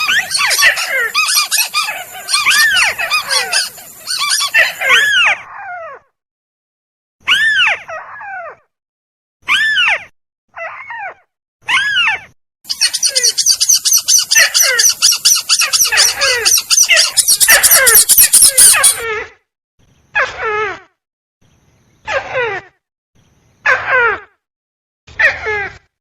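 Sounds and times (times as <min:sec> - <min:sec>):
crake falling calls: 0:00.0 - 0:05.1, 0:12.7 - 0:19.0
high-pitched bird chatter: 0:00.0 - 0:05.3, 0:11.8 - 0:19.0.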